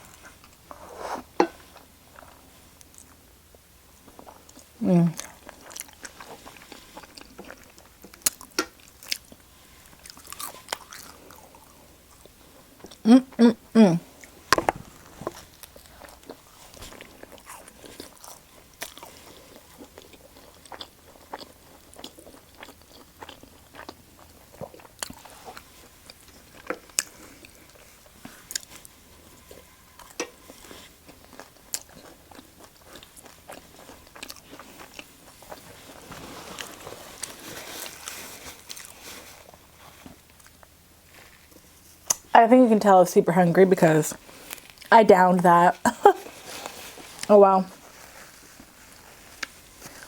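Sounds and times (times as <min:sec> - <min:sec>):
person biting and chewing food: 0:04.1 - 0:13.0, 0:14.2 - 0:42.3.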